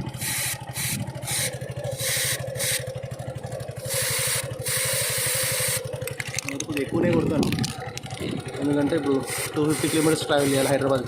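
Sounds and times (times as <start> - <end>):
motorcycle engine idling: 0.0 - 11.0
aerosol spray hissing bursts: 0.2 - 2.8, 3.9 - 5.8, 9.3 - 10.7.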